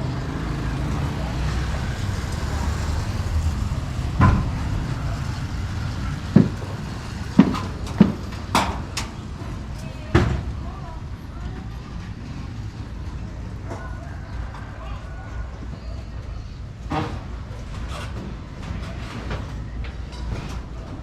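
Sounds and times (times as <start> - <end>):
low rumble: 0.0 - 9.8
sharp knocks: 4.0 - 8.9.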